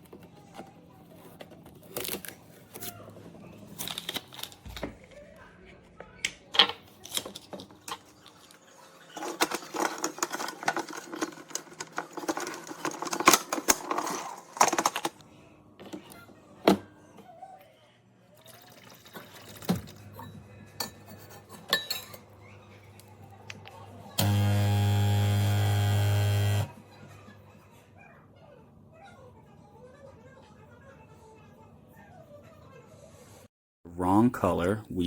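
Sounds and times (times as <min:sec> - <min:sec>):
hard objects clattering: 0:06.6 - 0:15.2.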